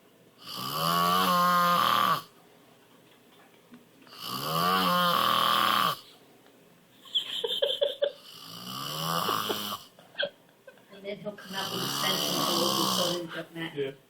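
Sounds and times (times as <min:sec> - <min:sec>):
man snoring loudly: 0:00.4 - 0:02.3, 0:04.1 - 0:06.0, 0:08.2 - 0:09.9, 0:11.4 - 0:13.3.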